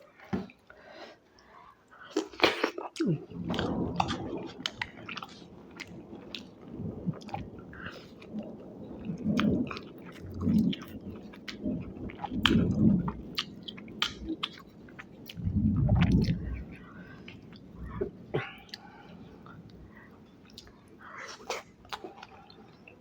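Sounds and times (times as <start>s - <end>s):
wet mouth clicks: 13.4s - 14.6s.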